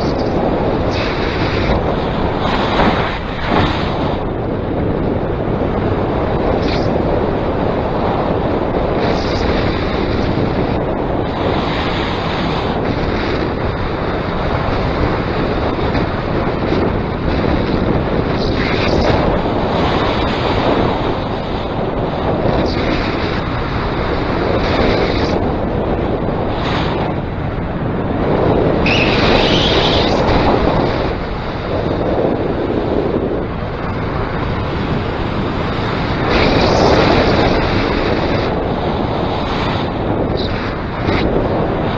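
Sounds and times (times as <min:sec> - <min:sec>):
wind rushing over microphone: 0:00.0 - 0:41.9.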